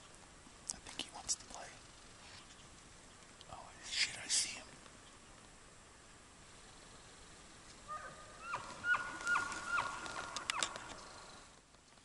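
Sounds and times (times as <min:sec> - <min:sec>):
elk bugling: 0:07.8 - 0:11.4.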